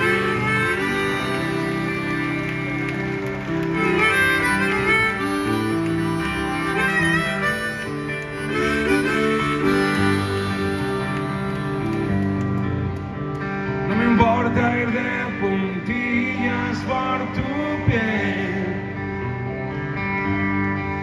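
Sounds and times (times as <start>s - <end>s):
harmonica melody: 0.0s - 15.0s
guitar chords: 0.0s - 21.0s.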